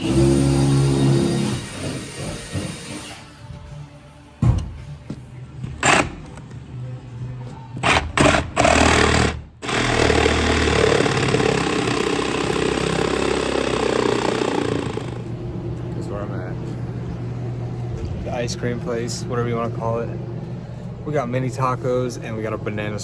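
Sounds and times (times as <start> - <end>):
background music: 0.0 - 15.2.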